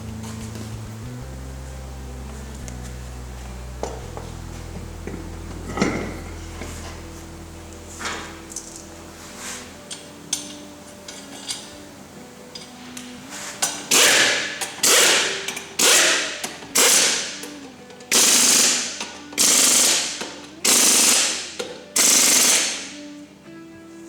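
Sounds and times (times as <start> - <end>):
power wrench bursts: 13.6 - 23.0.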